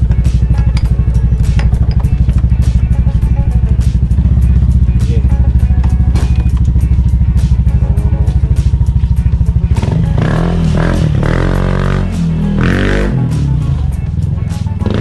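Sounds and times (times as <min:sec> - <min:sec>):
scooter engine idling: 0:00.0 - 0:11.4.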